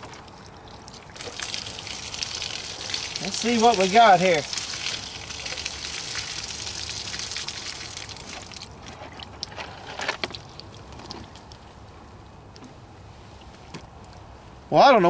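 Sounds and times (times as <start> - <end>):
water gushing from jugs: 0.0 - 11.5.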